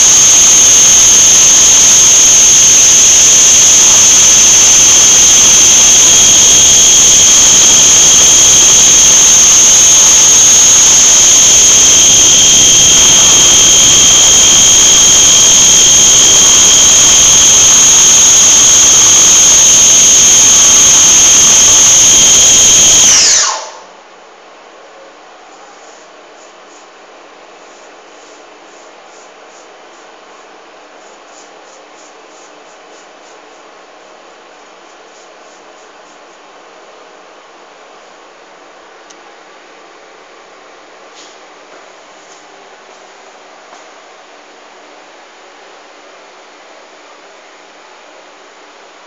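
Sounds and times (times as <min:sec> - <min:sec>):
milling machine spindle whine: 0:00.0 - 0:23.8.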